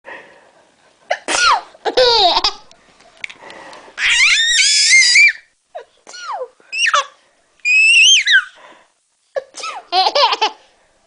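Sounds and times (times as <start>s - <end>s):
small child squealing with laughter: 4.0s - 5.5s, 6.7s - 8.6s.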